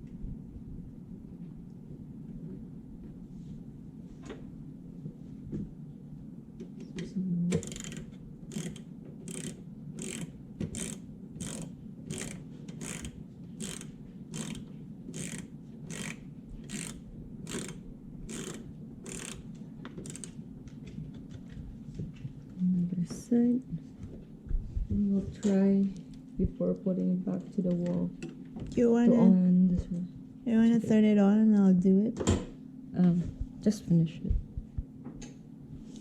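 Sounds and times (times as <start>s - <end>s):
hand ratchet clicking: 7.6s - 20.4s.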